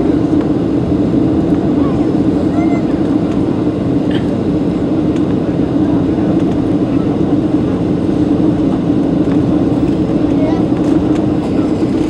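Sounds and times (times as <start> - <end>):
airliner cabin engine hum: 0.0 - 12.0
faint voices: 1.6 - 3.6.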